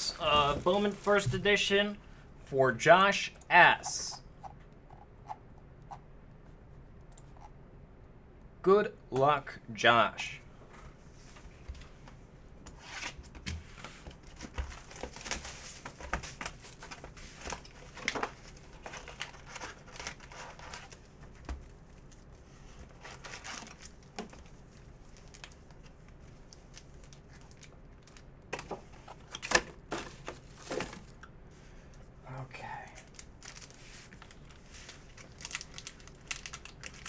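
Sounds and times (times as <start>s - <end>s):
foil packs rustling: 0.0s - 2.0s, 14.1s - 31.2s, 33.0s - 37.0s
wrappers tearing: 35.0s - 37.0s.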